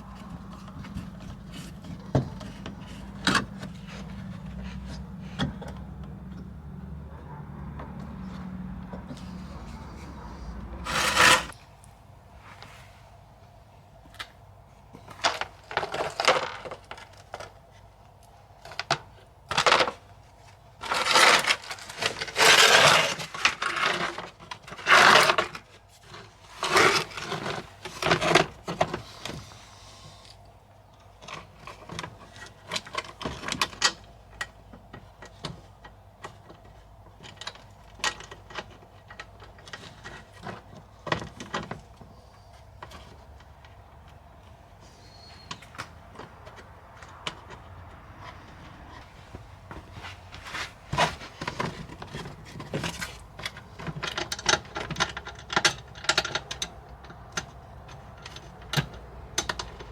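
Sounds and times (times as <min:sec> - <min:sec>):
parts and tools clattering: 0:00.0 - 0:05.8, 0:08.8 - 0:11.6, 0:15.0 - 0:17.6, 0:20.8 - 0:29.5, 0:31.1 - 0:42.1, 0:45.2 - 0:59.9
rough scrapes: 0:09.1 - 0:11.6.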